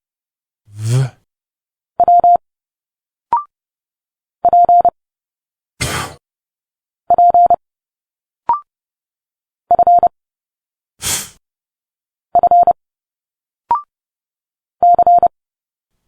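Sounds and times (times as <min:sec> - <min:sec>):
spoken letter sounds: 0:00.7 - 0:01.2, 0:05.8 - 0:06.2.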